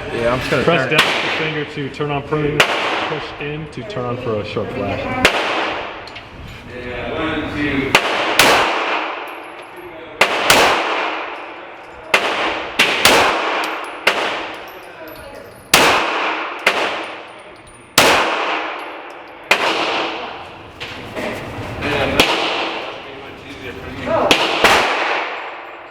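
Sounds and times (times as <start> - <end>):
pistol shots echoing indoors: 0.9 - 1.6, 2.6 - 3.3, 5.2 - 6.0, 7.9 - 14.8, 15.5 - 20.5, 22.2 - 23.0, 24.1 - 25.9.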